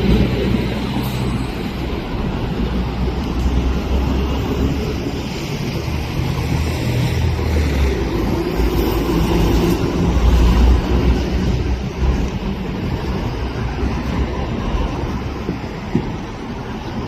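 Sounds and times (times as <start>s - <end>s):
jet engines rumbling: 0.0s - 17.0s.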